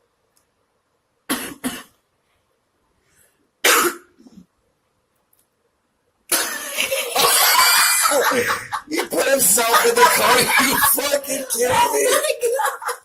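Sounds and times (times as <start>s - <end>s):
person coughing: 1.3s - 1.9s, 3.6s - 4.1s, 6.3s - 7.5s.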